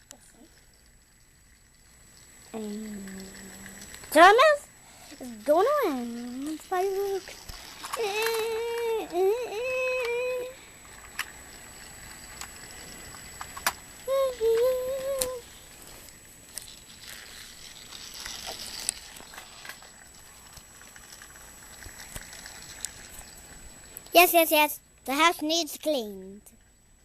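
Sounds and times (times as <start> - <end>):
toy train clicking and rattling: 0.0 - 26.7
child vocalising: 2.6 - 3.8, 7.8 - 10.6, 14.1 - 15.5.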